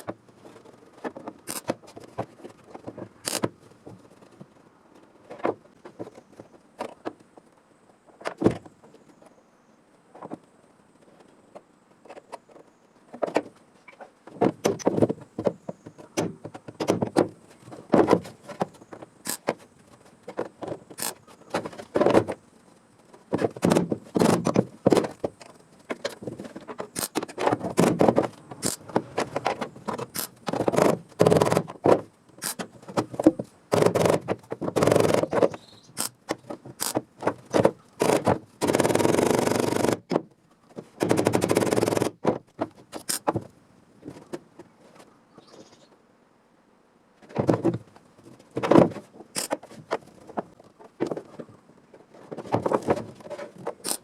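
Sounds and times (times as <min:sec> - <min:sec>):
welding bursts: 0:38.0 - 0:40.1.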